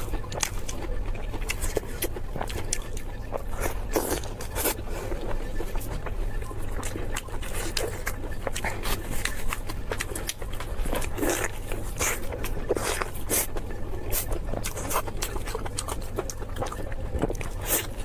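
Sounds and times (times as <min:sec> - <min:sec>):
person chewing and crunching food: 0:00.0 - 0:18.0.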